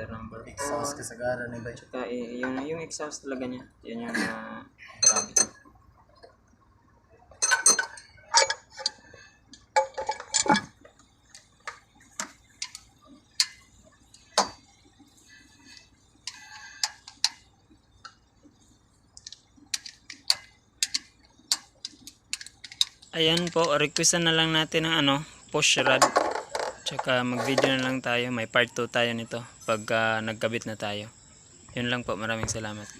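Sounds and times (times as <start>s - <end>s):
metal parts and tools clinking: 4.9s - 5.6s, 7.3s - 14.7s, 19.2s - 24.1s
ringing metallic clinks: 4.9s - 5.6s, 7.4s - 9.0s.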